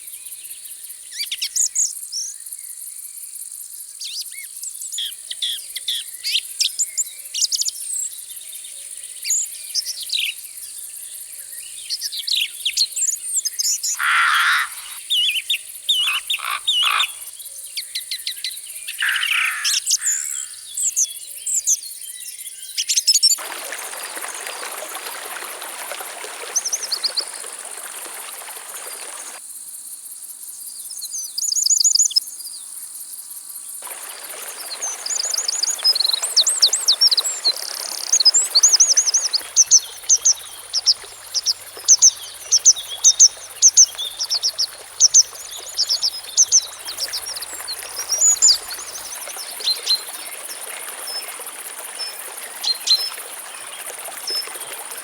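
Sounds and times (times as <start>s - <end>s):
insects droning: 10.2s - 21.0s, 23.4s - 31.5s, 32.8s - 55.0s
flowing water: 14.0s - 15.0s, 15.9s - 17.3s, 23.4s - 29.4s, 33.8s - 55.0s
birds chirping and singing: 15.9s - 17.2s.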